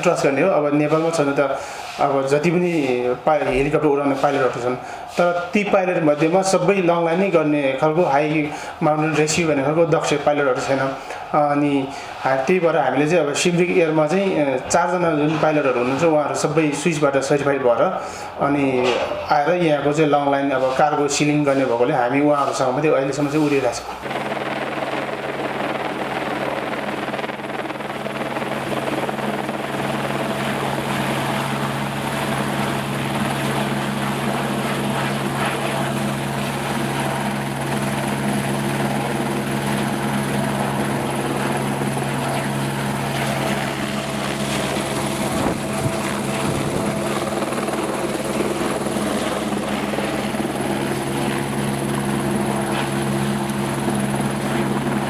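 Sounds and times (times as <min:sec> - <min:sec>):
helicopter engine and rotor: 0:23.8 - 0:55.0.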